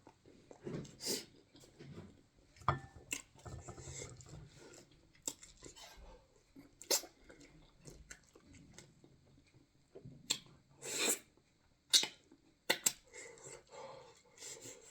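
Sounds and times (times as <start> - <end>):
person chewing wetly: 4.7 - 5.9, 6.8 - 9.0.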